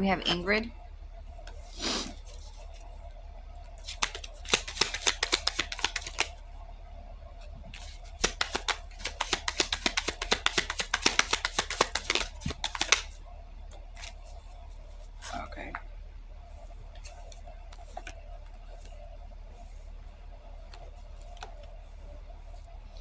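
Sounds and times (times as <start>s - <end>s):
cards being shuffled: 3.8s - 6.4s, 7.7s - 13.2s, 13.9s - 14.3s.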